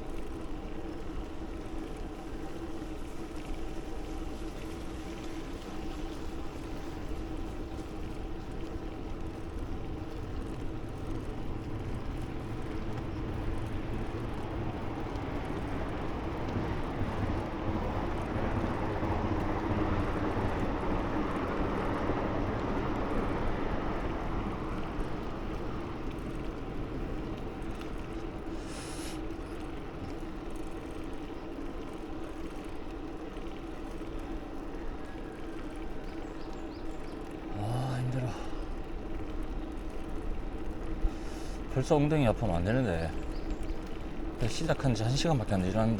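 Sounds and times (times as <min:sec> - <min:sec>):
wind and road noise: 0:00.0 - 0:37.5, 0:38.5 - 0:45.9
low hum: 0:00.0 - 0:45.9
short hiss: 0:28.6 - 0:29.2.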